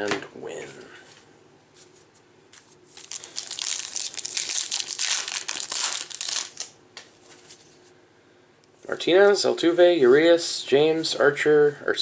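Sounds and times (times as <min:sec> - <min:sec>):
foil wrapper crinkling: 0:02.9 - 0:06.8.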